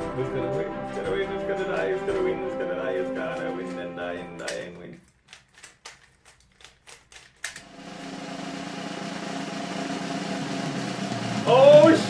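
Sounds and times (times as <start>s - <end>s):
plastic puzzle cube clicking: 4.4s - 7.6s.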